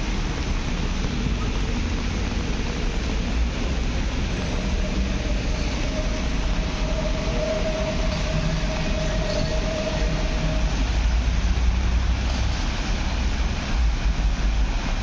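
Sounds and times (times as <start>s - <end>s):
train rumbling on rails: 0.0s - 15.0s
wheel squeal: 4.4s - 10.9s.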